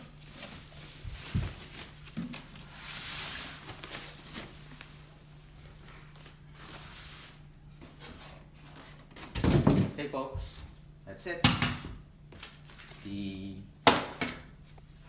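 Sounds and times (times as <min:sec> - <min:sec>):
soft packaging rustle: 0:00.0 - 0:09.3, 0:12.4 - 0:13.3.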